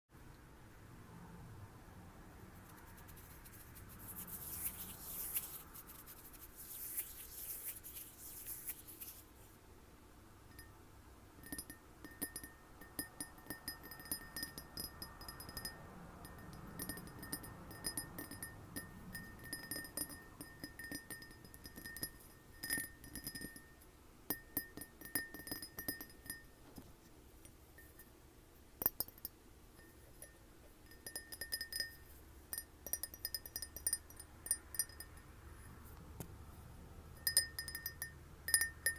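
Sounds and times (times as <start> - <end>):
glass tapping: 10.5 - 10.8, 11.4 - 26.8, 28.8 - 35.3, 37.2 - 38.9.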